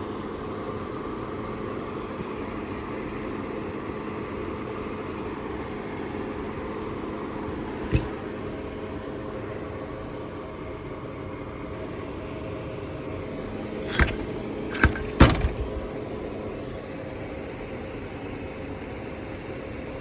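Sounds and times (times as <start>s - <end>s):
steady mechanical hum: 0.0s - 12.1s, 12.7s - 16.2s.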